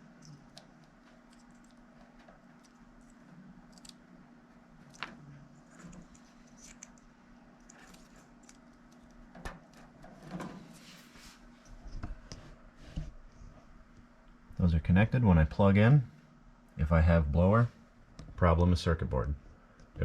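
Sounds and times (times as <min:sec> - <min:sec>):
low steady hum: 0:00.0 - 0:20.0
wires and tools rattling: 0:04.8 - 0:10.6.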